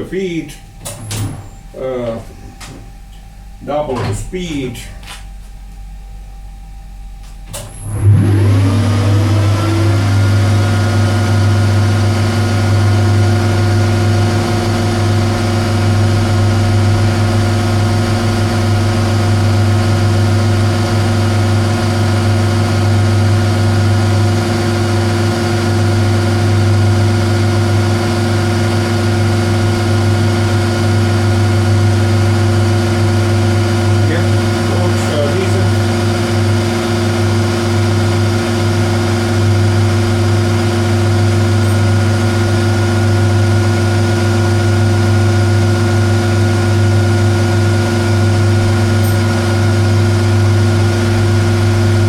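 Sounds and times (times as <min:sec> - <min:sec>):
metal lathe motor whining: 0:07.7 - 0:44.8.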